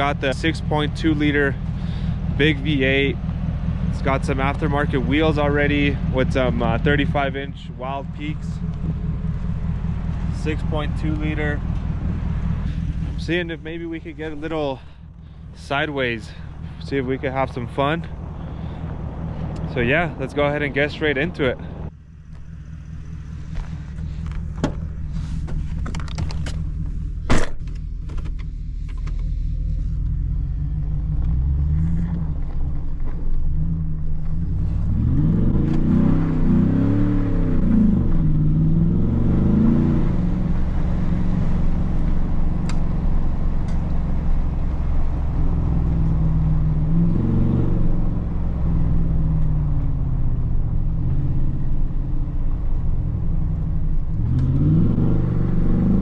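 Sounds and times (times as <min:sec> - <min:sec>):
truck engine accelerating: 0:00.0 - 0:56.0.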